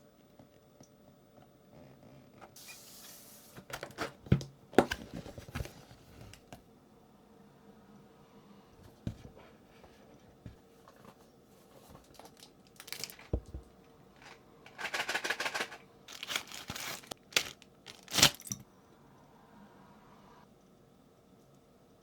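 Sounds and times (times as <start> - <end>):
packaging tearing and crinkling: 12.1 - 13.3, 14.2 - 18.6.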